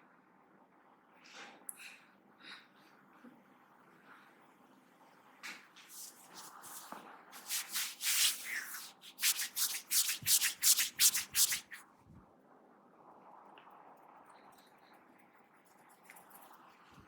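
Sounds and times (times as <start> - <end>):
hands rubbing through hair: 5.8 - 11.8.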